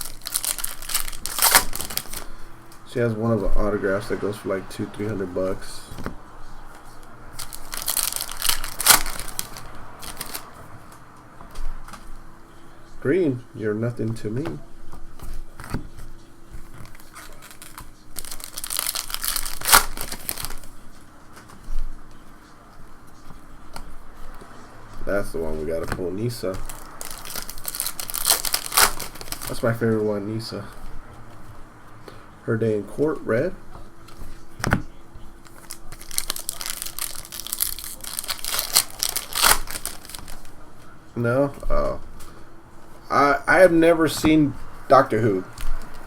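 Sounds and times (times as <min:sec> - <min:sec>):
wrapper crinkling and tearing: 0:00.0 - 0:02.4, 0:07.3 - 0:10.6, 0:16.7 - 0:20.8, 0:25.8 - 0:29.9, 0:35.4 - 0:40.6
cards handled: 0:00.0 - 0:02.8, 0:05.0 - 0:12.2, 0:14.0 - 0:29.8, 0:33.2 - 0:43.0, 0:44.0 - 0:46.0.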